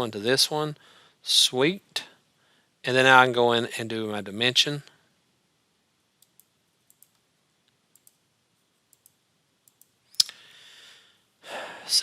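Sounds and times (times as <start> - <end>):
computer mouse clicking: 6.2 - 7.2, 7.9 - 8.2, 8.9 - 10.0.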